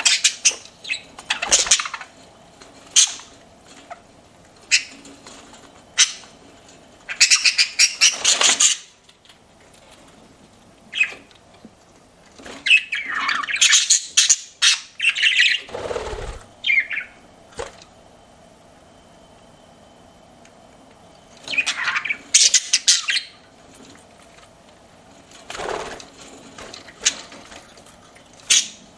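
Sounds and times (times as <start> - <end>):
budgerigars chirping and squawking: 0.0 - 2.2, 2.8 - 5.1, 6.0 - 6.4, 7.1 - 9.0, 10.9 - 11.3, 12.5 - 17.2, 21.4 - 23.4, 28.4 - 28.9.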